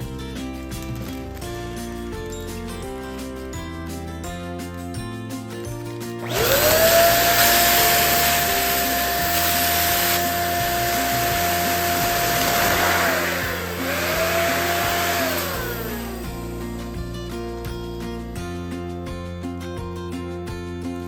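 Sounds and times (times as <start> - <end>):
background music: 0.0 - 21.0
electric balloon pump running: 6.2 - 17.0.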